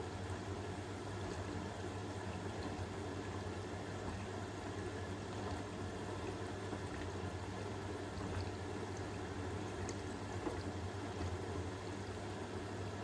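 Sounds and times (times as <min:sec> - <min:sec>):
washing machine running: 0:00.0 - 0:13.0.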